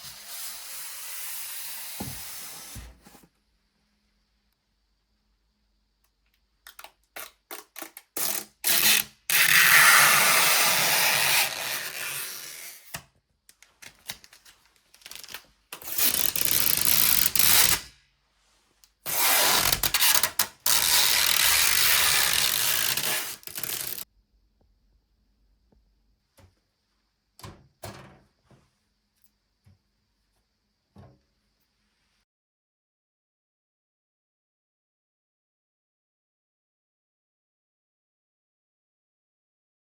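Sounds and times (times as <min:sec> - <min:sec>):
rasping ratchet-like noise: 0:19.1 - 0:24.0.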